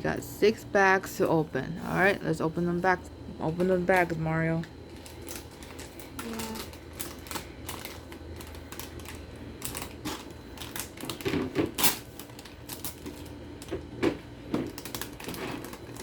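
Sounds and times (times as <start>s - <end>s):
plastic packets crinkling: 4.8s - 16.0s.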